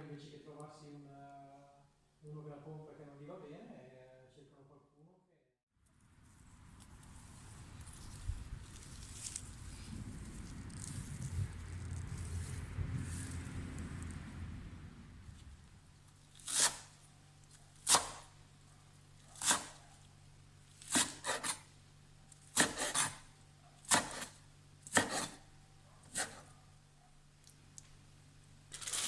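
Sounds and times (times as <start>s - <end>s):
knife cutting on wooden board: 16.4s - 17.0s, 17.8s - 18.3s, 19.3s - 19.8s, 20.8s - 21.7s, 22.5s - 25.4s, 26.1s - 26.6s.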